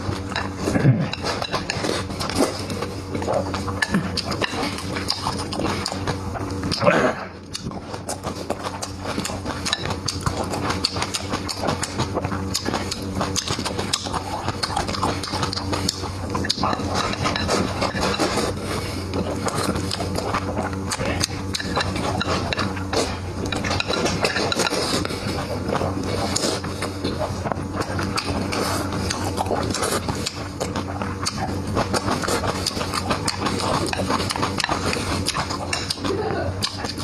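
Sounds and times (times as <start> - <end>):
chewing: 0.0 - 37.0
wet smacking clicks: 3.1 - 17.2.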